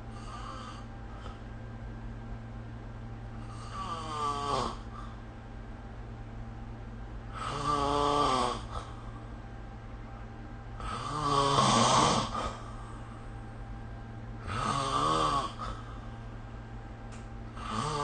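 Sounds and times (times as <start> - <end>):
steady low hum: 0.0 - 18.0
person snoring: 0.1 - 1.4, 3.4 - 5.2, 7.3 - 9.0, 10.8 - 12.8, 14.4 - 16.0, 17.6 - 18.0.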